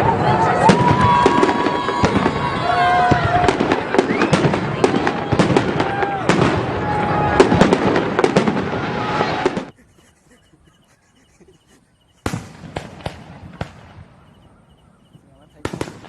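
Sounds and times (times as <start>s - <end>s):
fireworks bangs and crackling: 0.0s - 9.8s, 12.2s - 14.6s, 15.2s - 16.0s
faint chirping: 9.7s - 12.3s, 13.5s - 15.7s.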